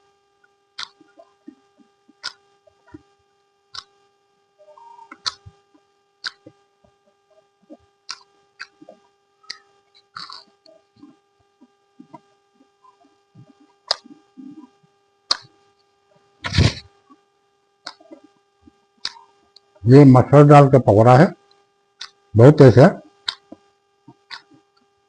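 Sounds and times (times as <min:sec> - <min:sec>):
faint steady hum: 0:00.0 - 0:25.0
crunchy clicks of eating: 0:00.8 - 0:03.1, 0:03.7 - 0:04.0, 0:05.0 - 0:12.3, 0:12.9 - 0:17.2, 0:17.8 - 0:19.8, 0:21.3 - 0:22.3, 0:23.1 - 0:24.9
chewing: 0:10.2 - 0:11.2.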